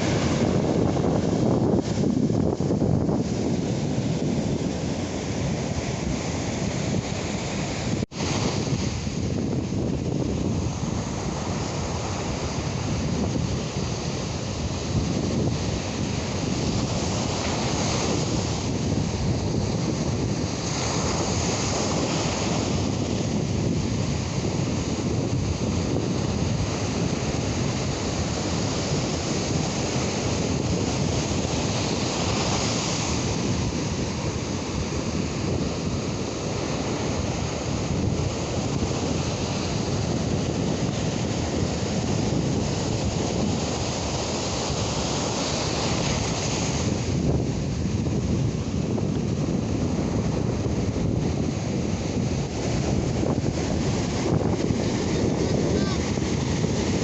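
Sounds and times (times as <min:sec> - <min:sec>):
ocean surf breaking: 0:00.0 - 0:57.0
wind buffeting microphone: 0:00.0 - 0:57.0.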